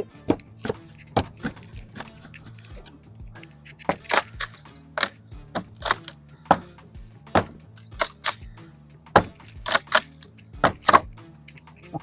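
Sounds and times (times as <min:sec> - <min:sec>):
background music: 0:00.0 - 0:12.0
hammer on wooden boards: 0:05.5 - 0:05.9, 0:06.5 - 0:07.6, 0:09.1 - 0:09.4, 0:10.6 - 0:11.1.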